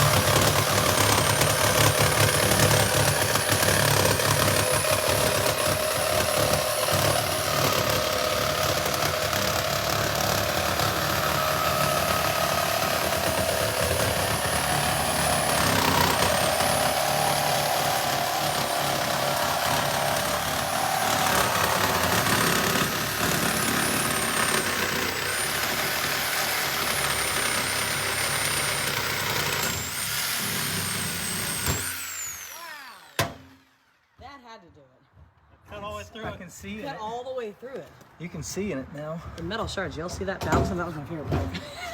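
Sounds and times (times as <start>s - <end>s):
angle grinder cutting steel: 0.0s - 33.8s
grinder disc spinning down: 0.0s - 33.8s.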